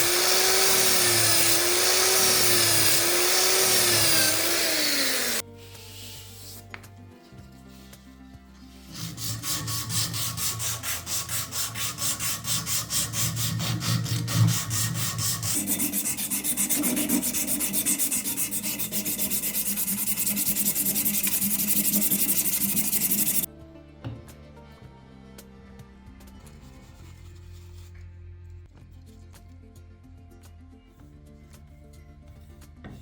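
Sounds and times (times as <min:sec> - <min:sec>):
sanding wood by hand: 0:00.0 - 0:06.7, 0:08.7 - 0:23.5.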